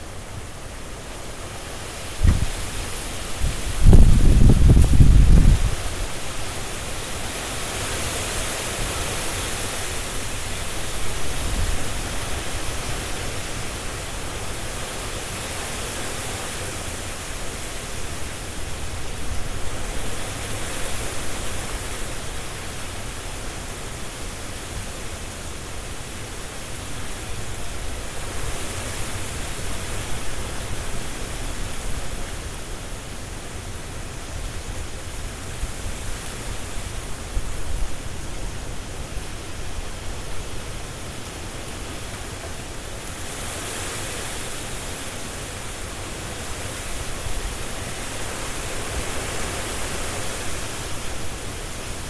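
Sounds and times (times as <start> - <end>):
low wind rumble: 0.0 - 7.3
wind rushing through leaves: 0.0 - 52.0.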